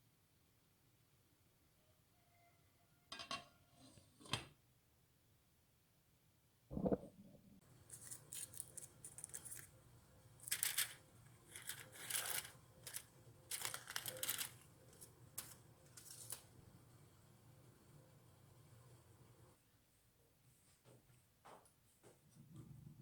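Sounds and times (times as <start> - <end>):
aluminium foil crinkling: 7.7 - 16.6.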